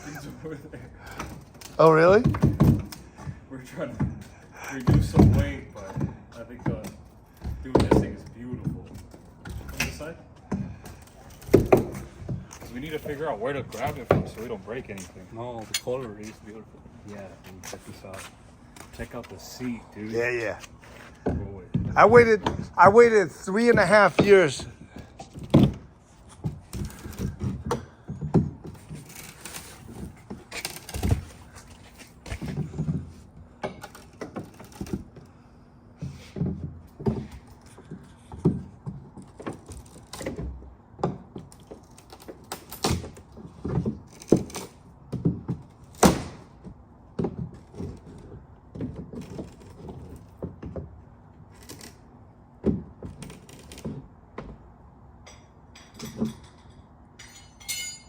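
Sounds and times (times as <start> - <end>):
objects knocking and clattering: 1.1 - 12.9, 21.0 - 35.3, 52.6 - 58.0.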